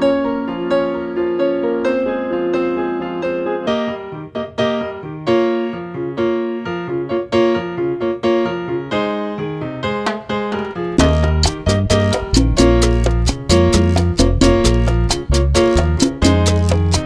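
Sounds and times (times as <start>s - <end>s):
keyboard playing a melody: 0.0s - 17.0s
sharp percussive hits: 10.1s - 14.8s.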